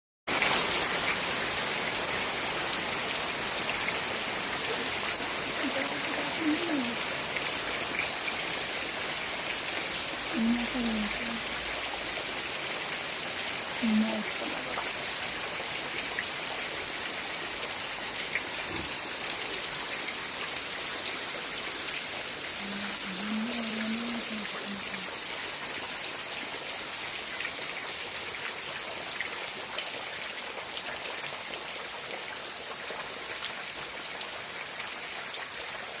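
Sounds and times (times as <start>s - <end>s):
heavy rain falling: 0.3s - 36.0s
drips and ticks: 3.7s - 12.4s.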